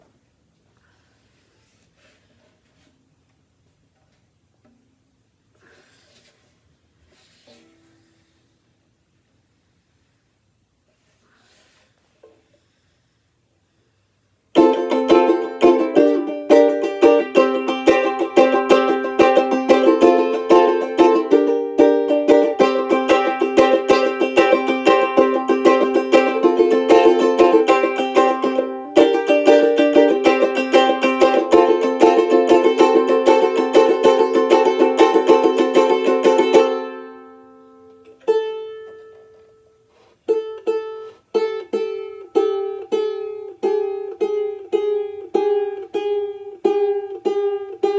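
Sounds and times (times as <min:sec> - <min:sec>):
banjolele strumming: 0:14.5 - 0:47.9.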